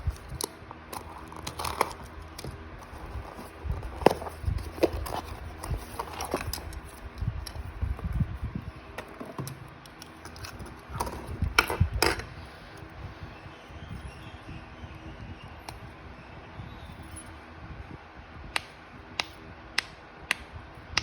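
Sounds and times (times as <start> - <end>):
packaging handling clicks and taps: 0.1 - 7.7.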